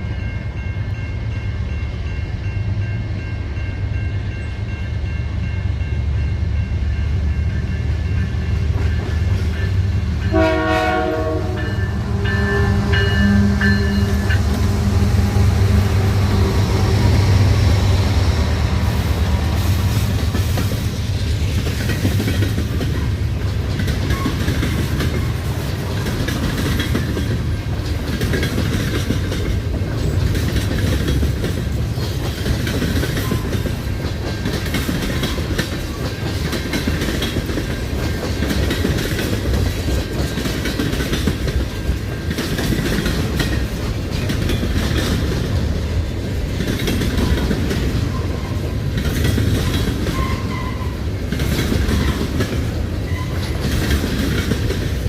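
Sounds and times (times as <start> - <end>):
freight train rumbling past: 0.0 - 55.0
wheels clacking over rail joints: 18.6 - 55.0
high-pitched wheel squeal: 50.1 - 51.0, 53.0 - 53.6.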